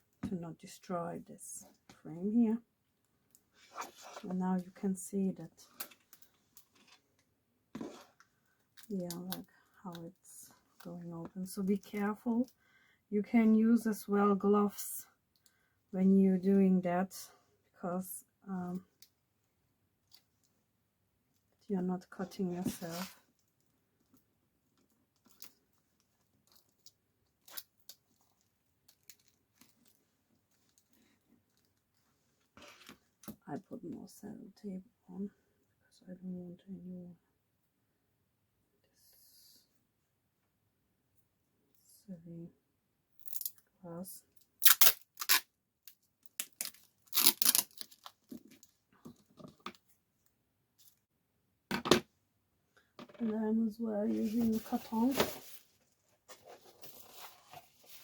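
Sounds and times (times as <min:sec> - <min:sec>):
small clicks and crackles: 0:05.6 - 0:10.2, 0:23.2 - 0:33.4
sticky tape pulled off roll: 0:44.6 - 0:45.5, 0:46.4 - 0:48.0.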